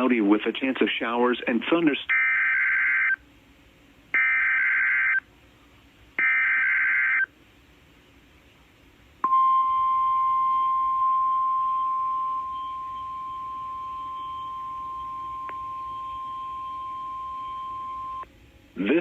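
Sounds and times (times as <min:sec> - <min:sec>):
steady alarm tone: 0:02.1 - 0:03.2, 0:04.2 - 0:05.2, 0:06.2 - 0:07.3, 0:09.3 - 0:18.2
two-tone digital data bursts: 0:04.2 - 0:05.2, 0:06.2 - 0:07.3.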